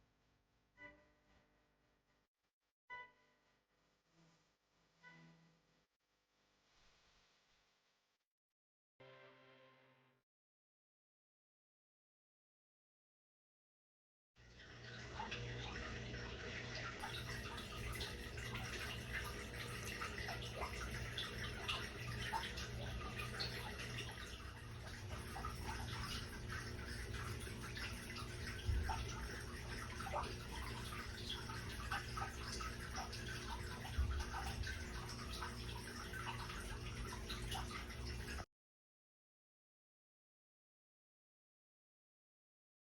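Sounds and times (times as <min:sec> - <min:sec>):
water trickling and dripping: 0:14.4 - 0:38.5
constant low hum: 0:15.6 - 0:38.4.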